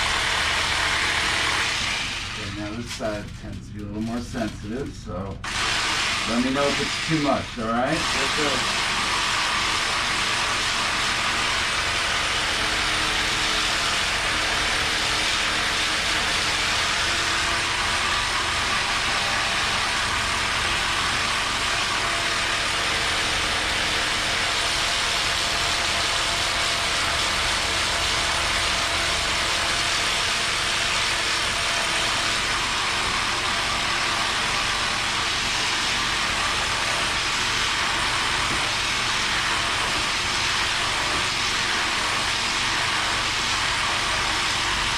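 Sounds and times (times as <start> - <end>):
massage machine running: 0.0 - 44.9.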